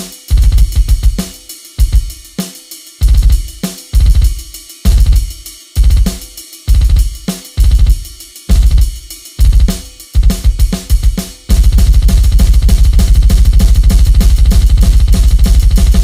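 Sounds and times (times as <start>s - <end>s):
electronic drum kit playing: 0.0s - 16.0s.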